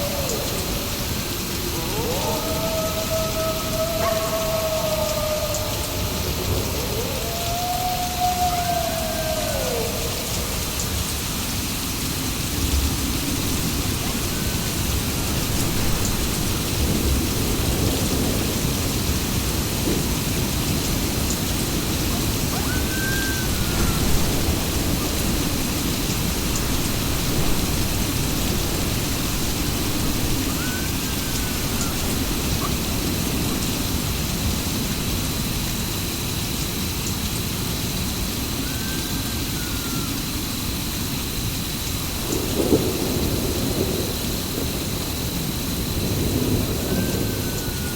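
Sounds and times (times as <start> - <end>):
wolf howls: 0.0 - 11.2, 13.0 - 16.9, 21.7 - 27.8, 29.5 - 33.8, 38.5 - 40.7, 46.6 - 47.9
heavy rain: 0.0 - 47.9
low rolling thunder: 0.0 - 47.9.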